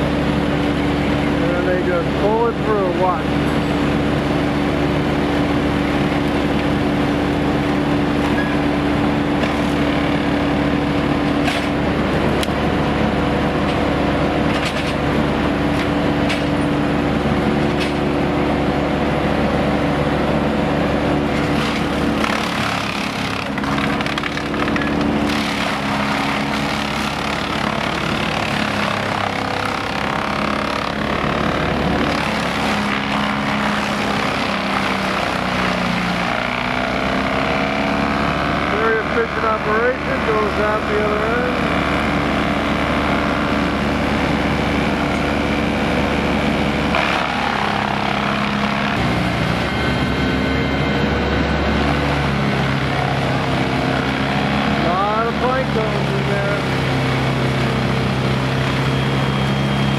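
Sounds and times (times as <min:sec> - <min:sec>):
wood chipper running: 0:00.0 - 0:59.9
wood cracking: 0:21.3 - 0:37.5, 0:46.9 - 0:49.0.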